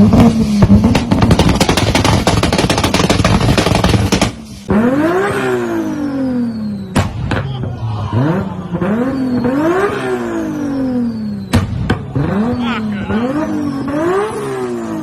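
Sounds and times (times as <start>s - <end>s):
exhaust crackles and pops: 0.0s - 5.5s
sports car engine revving: 0.0s - 7.4s, 8.0s - 15.0s
high whistle: 5.6s - 7.2s, 8.8s - 12.6s.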